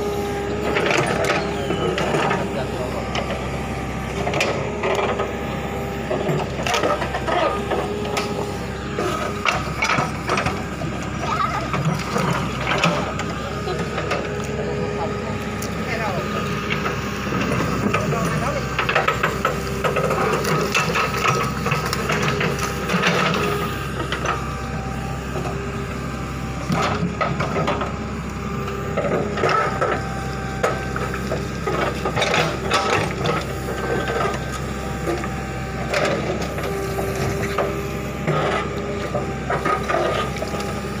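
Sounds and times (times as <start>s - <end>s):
diesel engine running: 0.0s - 41.0s.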